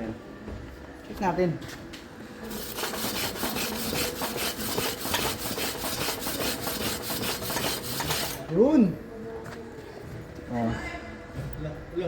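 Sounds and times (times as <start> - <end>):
faint machine hum: 0.0 - 12.0
wire brush scrubbing metal: 2.5 - 8.4.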